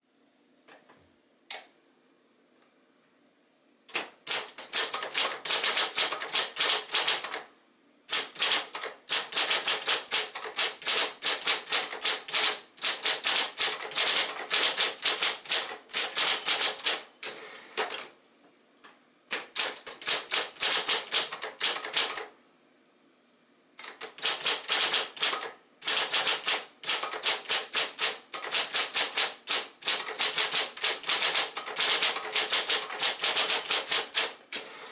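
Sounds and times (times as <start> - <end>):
electric typewriter typing: 3.9 - 7.5, 8.1 - 18.1, 19.3 - 22.4, 23.8 - 34.7
typewriter clicks: 3.9 - 7.5, 8.1 - 18.1, 19.3 - 22.3, 23.8 - 34.7.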